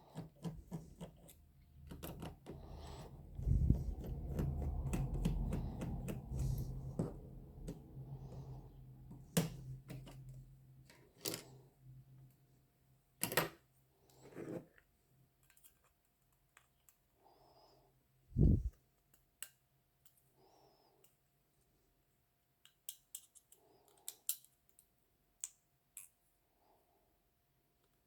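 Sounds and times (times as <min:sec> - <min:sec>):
rubbing and handling noise: 0:00.0 - 0:11.2.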